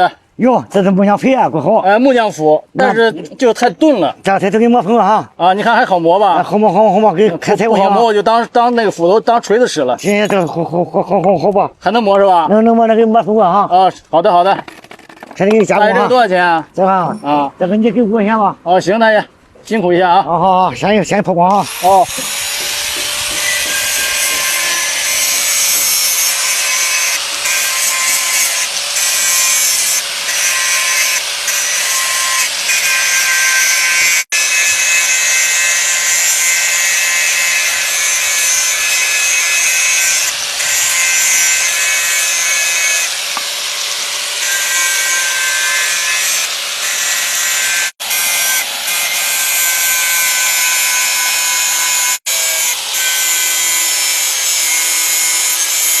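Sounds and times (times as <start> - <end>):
electric grinder motor whine: 21.6 - 34.2
polishing disc scraping steel: 21.6 - 51.4.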